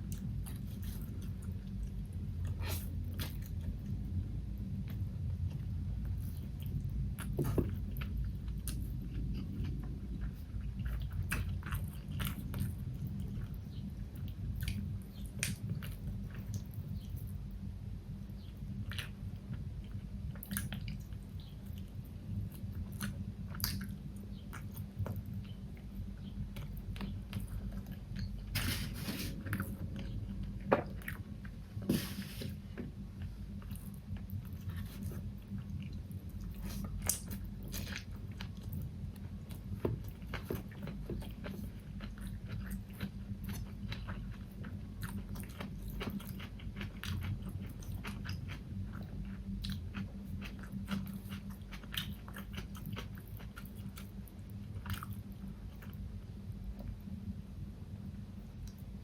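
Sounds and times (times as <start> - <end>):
steady low hum: 0.0 - 59.0
chewing and biting food: 4.8 - 17.4, 18.3 - 28.6, 33.2 - 56.1.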